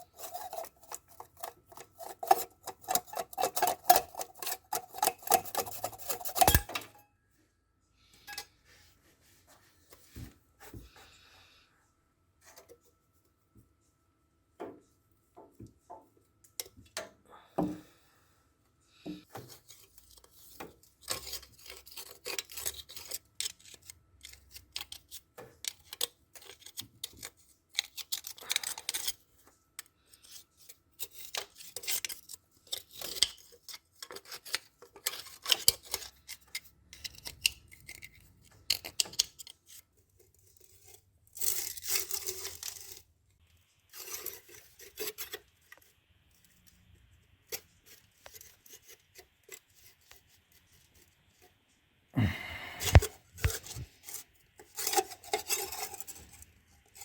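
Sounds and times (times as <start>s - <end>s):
tool scraping metal: 0.0s - 7.1s
hand tools clicking and tapping: 0.2s - 7.0s.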